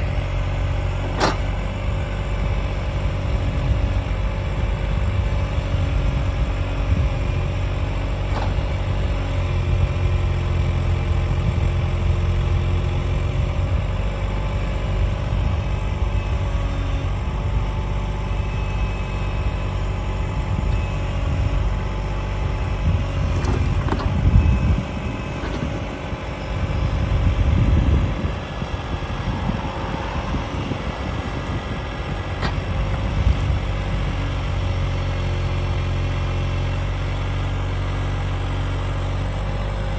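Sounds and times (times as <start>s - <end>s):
mini excavator engine running: 0.0s - 39.9s.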